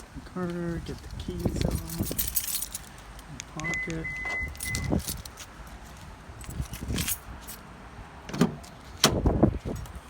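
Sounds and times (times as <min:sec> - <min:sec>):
keys jangling: 0:01.3 - 0:05.5, 0:06.4 - 0:07.6.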